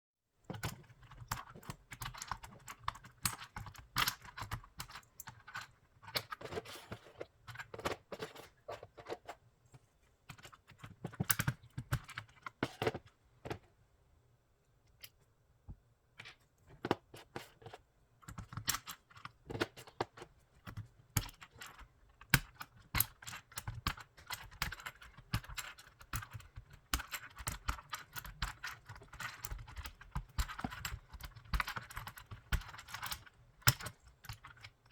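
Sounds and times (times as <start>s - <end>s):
keycaps clicking and clattering: 18.2s - 34.9s.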